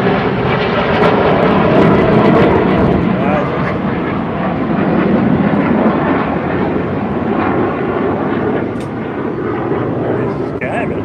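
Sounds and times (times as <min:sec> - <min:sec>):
jet noise: 0:00.0 - 0:11.0.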